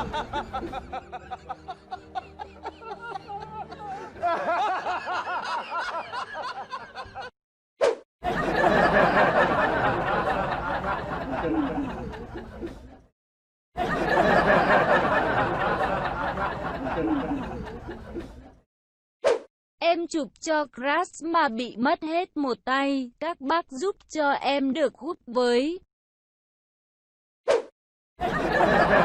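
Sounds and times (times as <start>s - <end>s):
people laughing: 0.0s - 7.3s, 8.2s - 13.1s, 13.8s - 18.6s, 28.2s - 29.0s.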